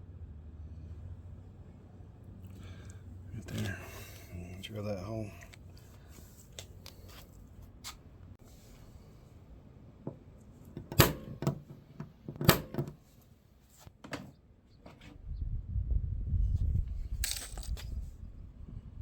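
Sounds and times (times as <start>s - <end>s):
low rumble: 15.2s - 19.0s.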